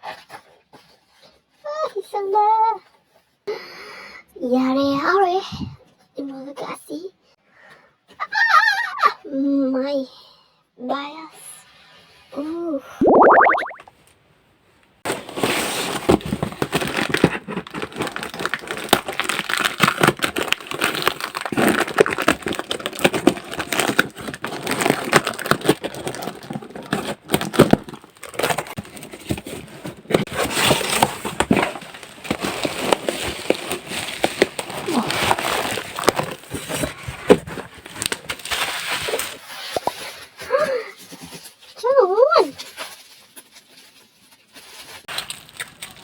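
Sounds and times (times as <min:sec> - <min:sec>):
packaging crinkling and rustling: 0:15.1 - 0:40.4, 0:42.6 - 0:46.0
small clicks and scrapes: 0:42.6 - 0:46.0.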